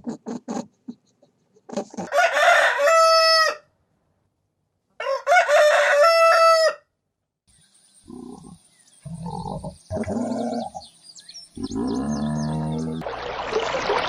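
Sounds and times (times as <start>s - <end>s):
rooster crowing: 2.1s - 3.7s, 5.0s - 6.9s
low animal calls: 11.6s - 13.0s.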